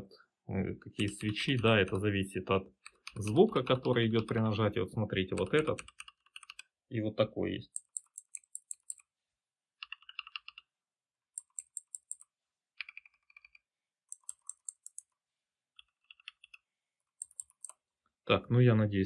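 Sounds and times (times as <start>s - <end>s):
dull mechanical keyboard typing: 1.0s - 2.1s, 2.8s - 4.6s, 5.2s - 6.8s, 7.6s - 9.1s, 9.8s - 10.7s, 11.3s - 15.1s, 15.8s - 17.9s
bright mechanical keyboard typing: 5.3s - 6.7s, 7.7s - 9.0s, 9.8s - 10.7s, 11.3s - 15.1s, 15.8s - 17.8s.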